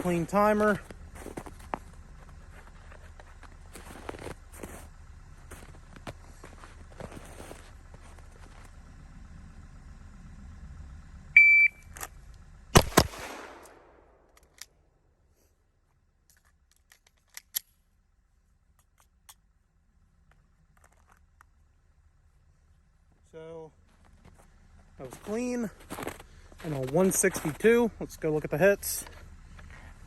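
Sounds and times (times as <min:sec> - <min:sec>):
shot timer beep: 0:11.4 - 0:11.9
pistol shots: 0:12.7 - 0:14.4.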